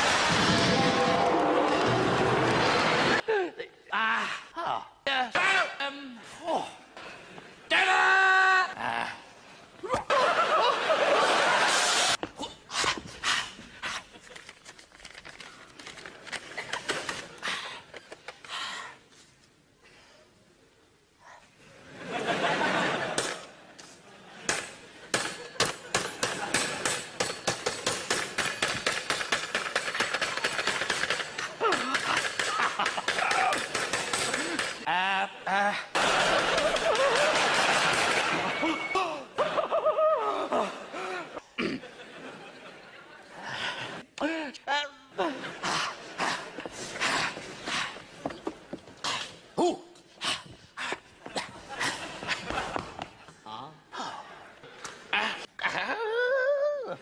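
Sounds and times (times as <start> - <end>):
man laughing: 39.0 - 42.0.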